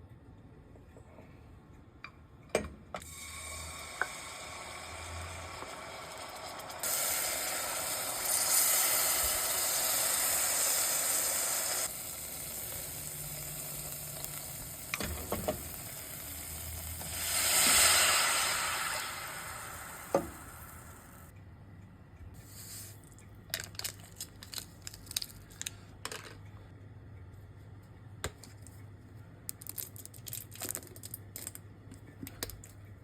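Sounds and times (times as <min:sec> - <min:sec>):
steady cooking hiss: 0:03.0 - 0:21.3, 0:22.4 - 0:23.0.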